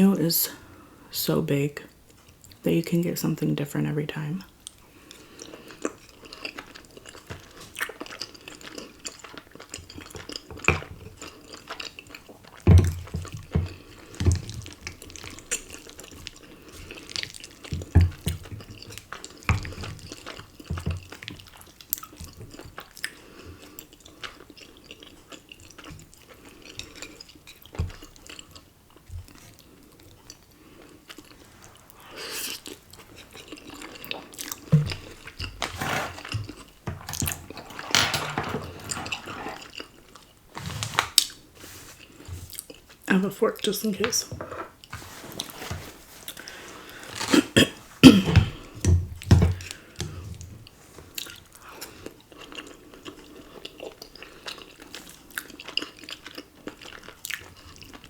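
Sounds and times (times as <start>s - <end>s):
wet chewing and slurping: 4.7s - 28.7s, 29.3s - 37.8s, 51.1s - 58.0s.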